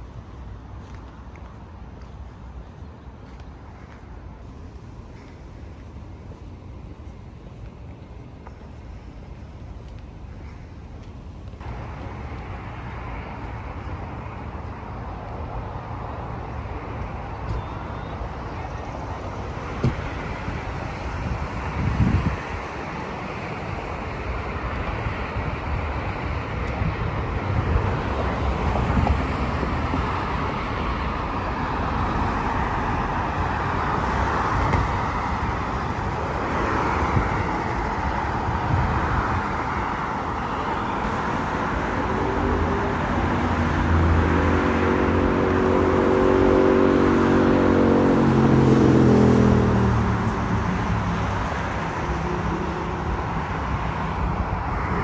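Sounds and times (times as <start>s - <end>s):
city traffic rushing: 0.0s - 55.0s
vehicle engine passing by: 41.2s - 55.0s.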